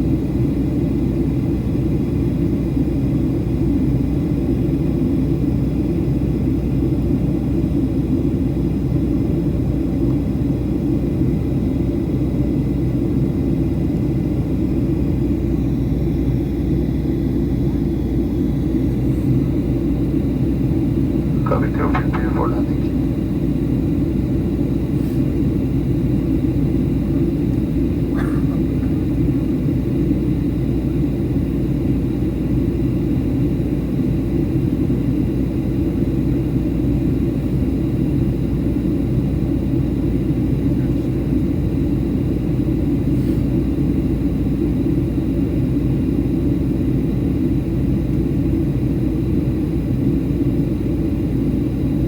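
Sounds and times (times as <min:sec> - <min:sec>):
airliner cabin rumble: 0:12.5 - 0:33.5.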